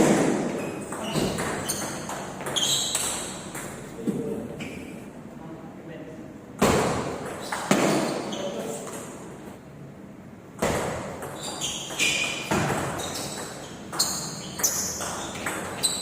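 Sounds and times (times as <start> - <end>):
table tennis ball hits: 0.0 - 4.2, 10.6 - 15.8
brief high squeaks: 0.6 - 3.3.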